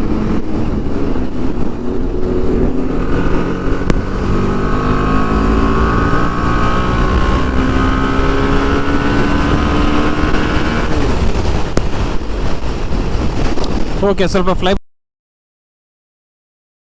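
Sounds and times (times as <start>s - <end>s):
motorcycle engine running: 0.0s - 13.6s
wind rumble on microphone: 0.0s - 14.8s.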